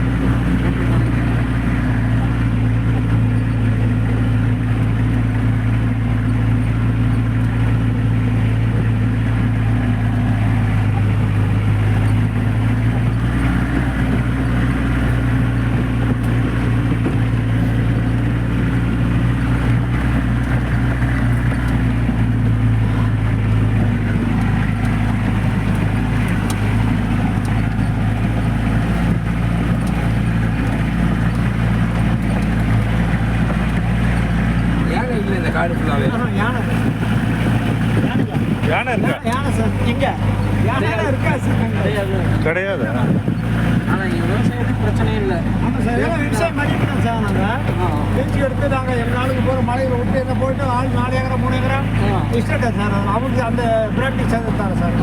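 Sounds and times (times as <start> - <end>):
jeep engine running: 0.0 - 55.0.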